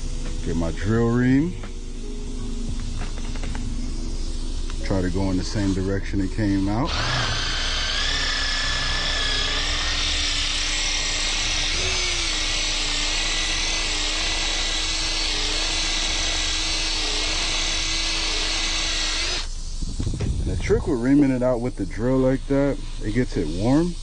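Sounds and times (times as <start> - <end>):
power drill whining: 5.4 - 19.5.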